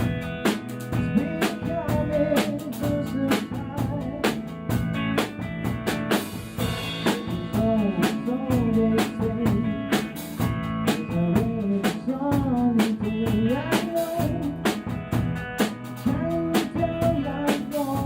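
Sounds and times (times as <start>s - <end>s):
rock song with drums and guitar: 0.0s - 18.0s
person singing: 1.0s - 4.4s, 7.2s - 10.2s, 10.9s - 14.7s, 16.0s - 18.0s.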